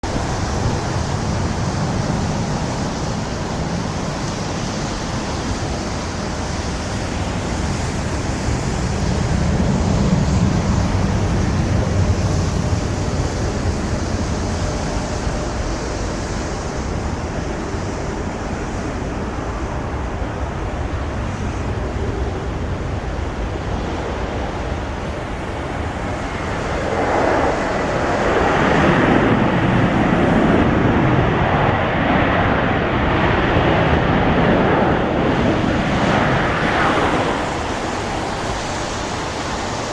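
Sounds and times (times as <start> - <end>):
jet engines rushing and whining: 0.0 - 39.9
wind on microphone: 0.0 - 39.9.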